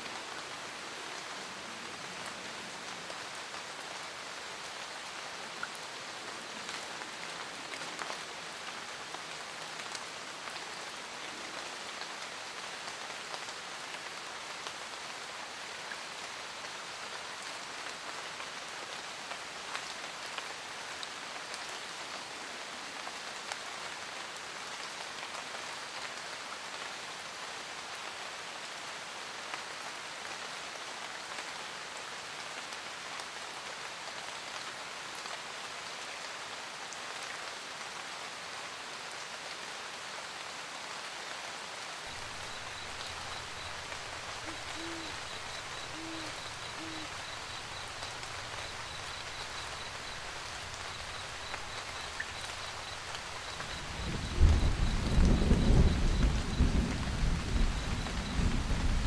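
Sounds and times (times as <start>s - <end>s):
rain pattering: 0.0s - 38.3s, 39.0s - 59.0s
owl hooting: 42.2s - 54.8s
thunder rumbling: 42.2s - 59.0s.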